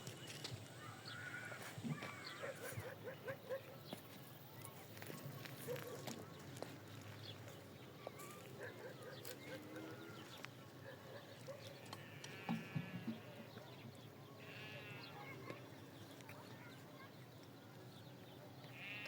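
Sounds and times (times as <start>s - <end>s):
faint livestock bleating: 11.9s - 13.5s, 14.4s - 15.6s, 18.7s - 19.0s.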